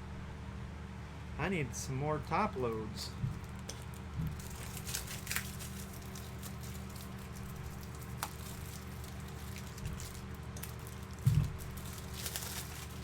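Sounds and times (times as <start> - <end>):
steady low hum: 0.0 - 13.0
cards rustling: 2.6 - 13.0.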